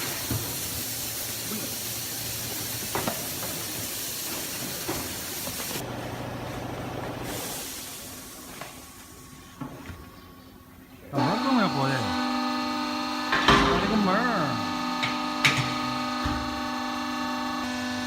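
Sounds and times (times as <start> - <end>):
hydraulic unit hum: 4.6 - 18.0.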